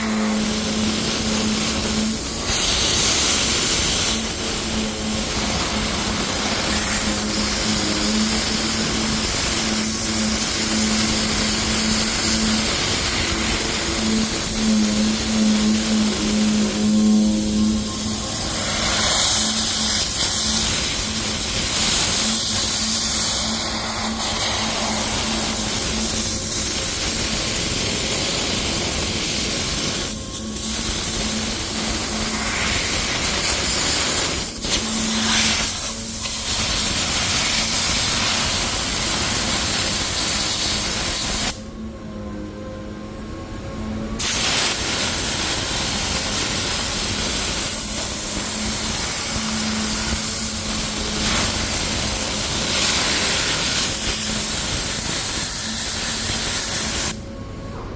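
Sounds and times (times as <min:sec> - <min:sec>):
paint spray gun hissing: 0:00.0 - 0:41.6, 0:44.2 - 0:57.2.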